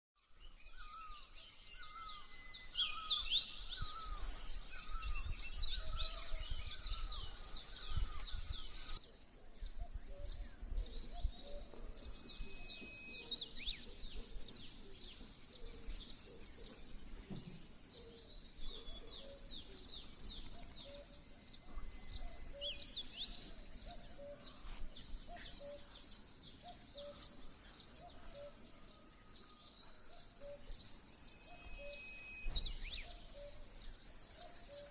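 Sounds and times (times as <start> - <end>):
small birds chirping: 0.2 - 34.9
lower bird call: 9.7 - 34.9.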